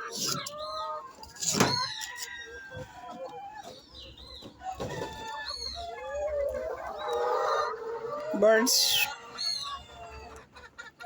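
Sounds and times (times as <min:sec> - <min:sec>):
hens clucking: 0:00.0 - 0:11.0.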